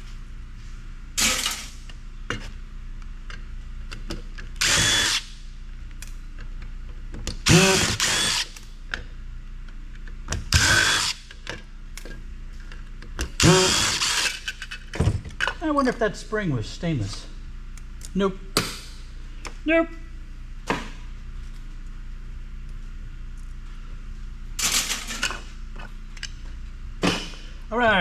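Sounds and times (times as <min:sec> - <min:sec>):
power drill running in bursts: 0:04.6 - 0:05.3, 0:07.5 - 0:08.5, 0:10.5 - 0:11.2, 0:13.4 - 0:14.4.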